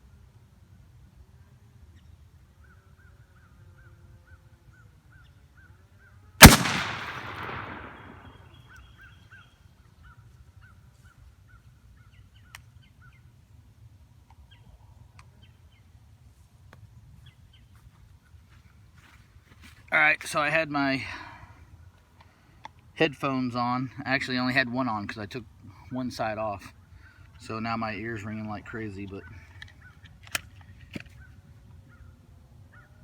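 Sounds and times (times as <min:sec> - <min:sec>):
shotgun shot: 0:06.4 - 0:08.4.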